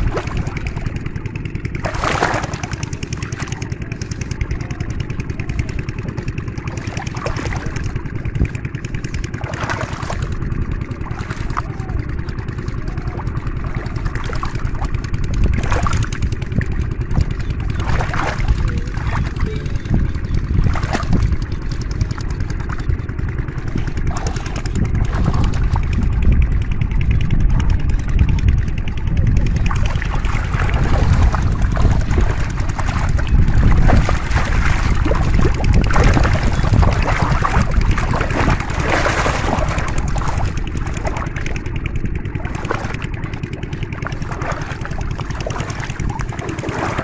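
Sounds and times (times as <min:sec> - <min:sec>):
constant low rumble: 0:00.0 - 0:47.0
water splashing: 0:00.0 - 0:47.0.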